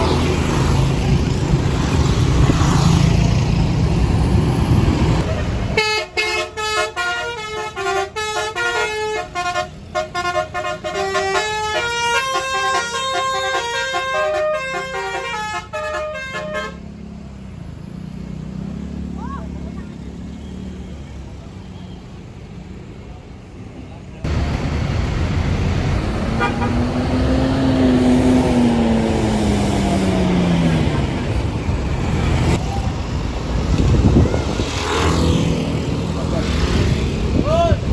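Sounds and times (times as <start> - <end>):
bus engine rumbling: 0.0 - 37.9
musical bus horn tune: 5.7 - 16.8, 26.3 - 27.0.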